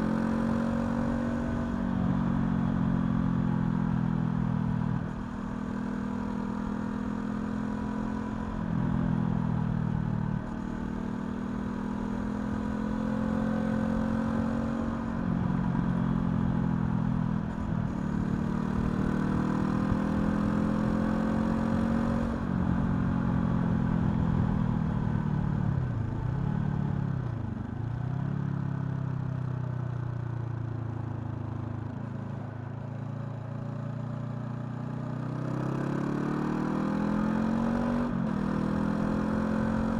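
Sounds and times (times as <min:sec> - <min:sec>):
motorcycle engine revving: 0:35.0 - 0:39.9.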